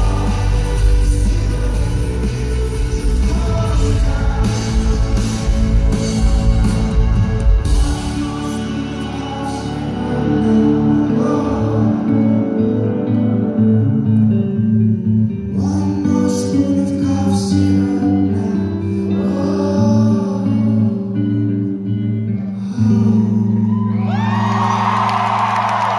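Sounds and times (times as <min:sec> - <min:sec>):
person singing: 0:00.0 - 0:14.2, 0:15.3 - 0:24.4
rock band playing live: 0:00.0 - 0:23.1
crowd cheering: 0:23.5 - 0:25.9.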